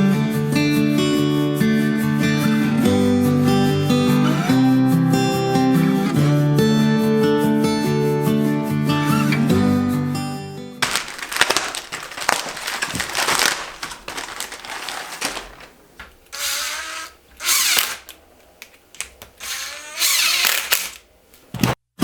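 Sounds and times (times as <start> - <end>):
power drill whining: 2.2 - 6.7, 9.0 - 9.7, 16.3 - 18.2, 19.4 - 21.1.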